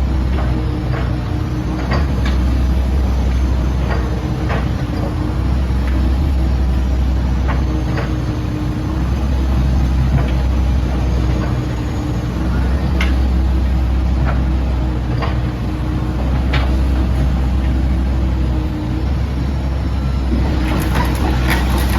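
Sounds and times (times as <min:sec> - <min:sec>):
excavator diesel engine running: 0:00.0 - 0:21.9
machine clanks and knocks: 0:00.3 - 0:06.3, 0:20.3 - 0:21.9.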